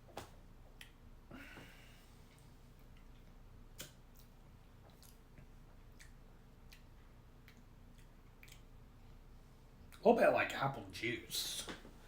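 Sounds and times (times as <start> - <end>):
mouth clicks and lip smacks: 2.8 - 8.9.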